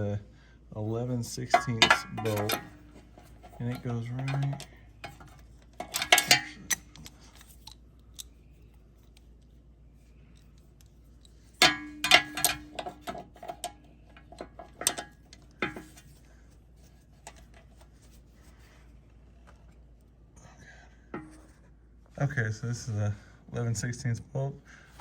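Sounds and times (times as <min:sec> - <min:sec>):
metal tools clinking: 0:01.4 - 0:08.4, 0:10.4 - 0:16.2.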